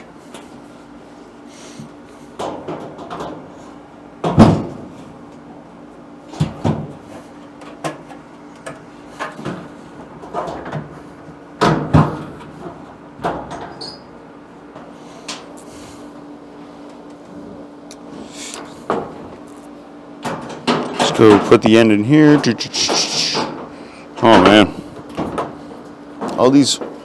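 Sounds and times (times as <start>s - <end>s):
metal panels knocking and clunking: 2.4s - 5.1s, 6.3s - 13.9s, 20.2s - 27.0s.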